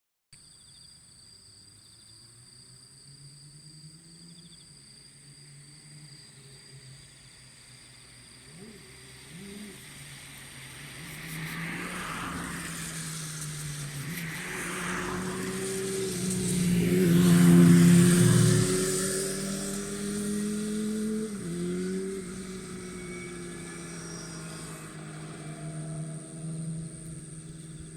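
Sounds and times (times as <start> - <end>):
vehicle engine hum: 5.0 - 27.9.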